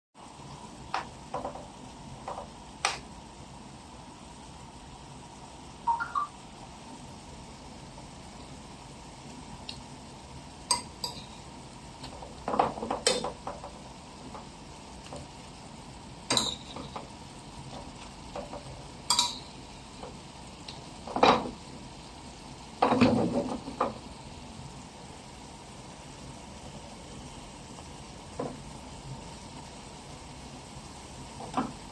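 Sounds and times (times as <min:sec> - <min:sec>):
soft sizzle: 0:00.2 - 0:31.9.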